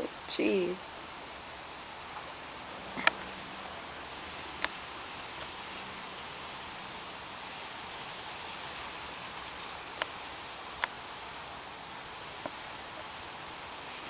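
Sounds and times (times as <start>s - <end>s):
faint high steady tone: 0.0s - 1.0s
outdoor background hiss: 0.0s - 14.0s.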